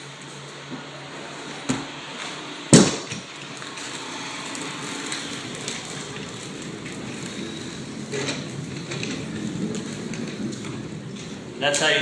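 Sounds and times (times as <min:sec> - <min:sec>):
floor roller rolling rumble: 0:00.0 - 0:12.0
loud knock: 0:02.8 - 0:03.2.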